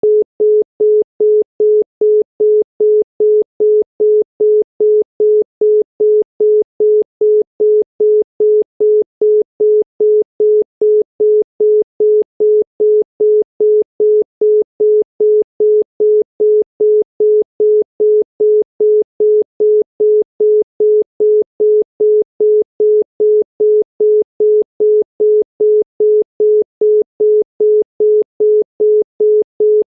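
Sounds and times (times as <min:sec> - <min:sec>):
telephone busy tone beeping: 0:00.0 - 0:29.9.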